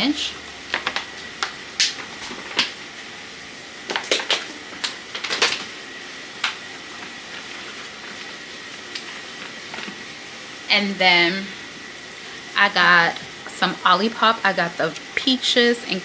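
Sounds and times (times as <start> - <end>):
packaging clicks and rustles: 3.9 - 5.8, 6.4 - 10.0.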